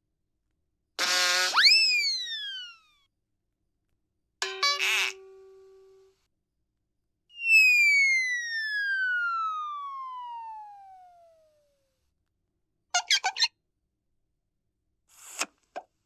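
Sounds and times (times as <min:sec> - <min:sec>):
cartoon falling whistle: 0:01.5 - 0:02.9, 0:07.4 - 0:11.6.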